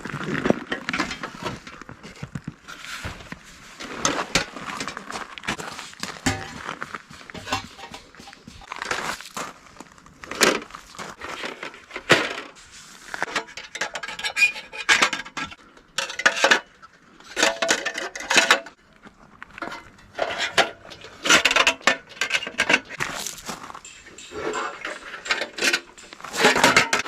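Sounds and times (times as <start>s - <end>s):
metal gear clattering and clinking: 19.6s - 27.0s.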